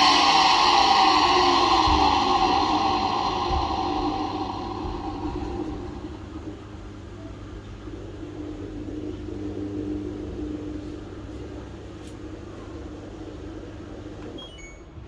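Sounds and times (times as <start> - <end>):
clothes dryer grinding: 0.0 - 6.5.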